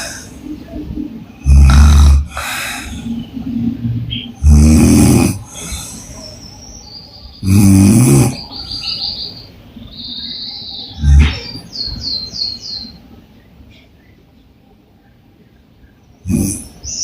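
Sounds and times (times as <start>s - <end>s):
birds chirping: 0.0s - 17.0s
woman snoring: 1.4s - 3.0s, 7.4s - 8.4s.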